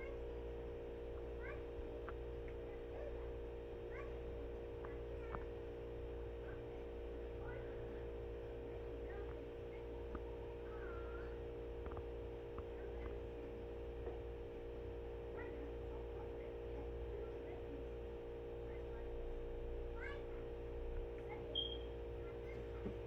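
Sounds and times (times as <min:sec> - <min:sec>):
electrical hum: 0:00.0 - 0:23.0
faint chirps and clicks: 0:21.2 - 0:22.0.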